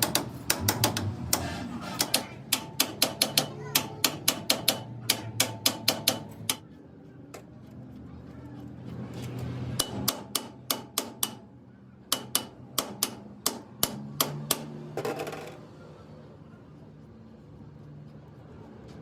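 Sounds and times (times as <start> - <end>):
hammer striking metal: 0.0 - 6.6, 9.8 - 15.6.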